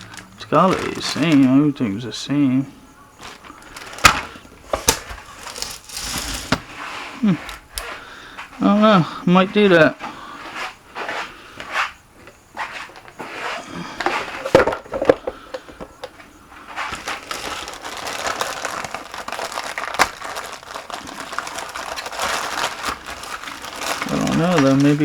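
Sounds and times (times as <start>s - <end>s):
plastic parts clicking and knocking: 0.0s - 1.6s, 3.2s - 6.7s, 14.0s - 16.2s
small clicks and rustling: 3.2s - 6.6s.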